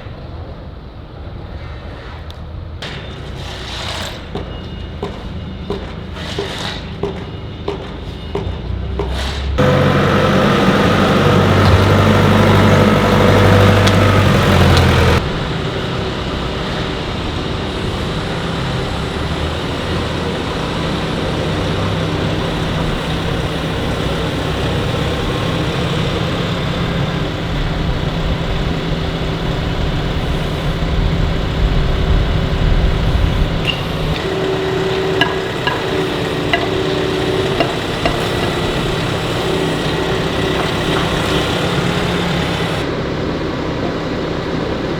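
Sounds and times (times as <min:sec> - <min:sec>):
diesel engine humming: 0:06.9 - 0:44.9.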